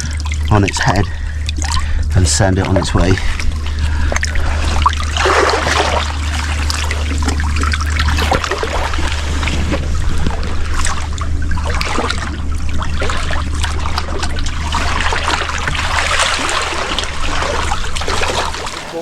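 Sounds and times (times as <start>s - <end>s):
sea water sloshing among rocks: 3.9s - 19.0s.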